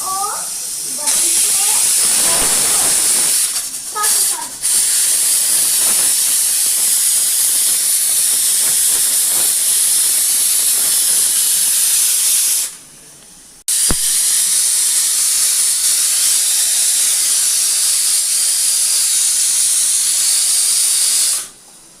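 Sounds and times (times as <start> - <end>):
pressure cooker whistle hissing: 0.0 - 12.8, 13.7 - 21.6
sharp click: 13.8 - 14.2.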